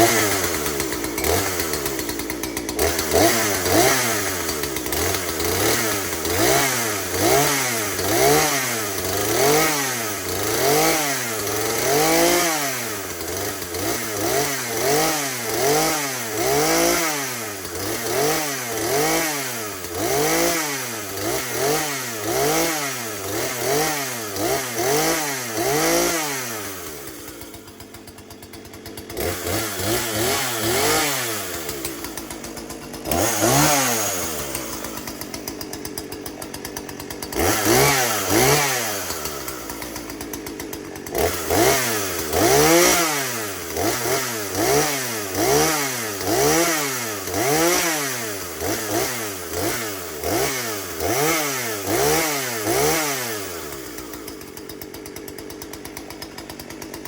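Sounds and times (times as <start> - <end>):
chainsaw revving: 0.0 - 57.0.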